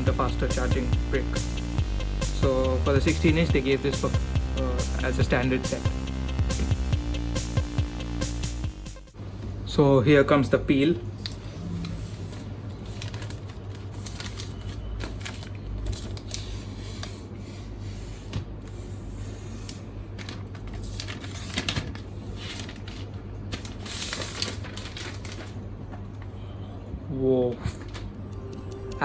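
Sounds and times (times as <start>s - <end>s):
plastic film peeling: 12.4s - 17.2s, 19.7s - 25.7s.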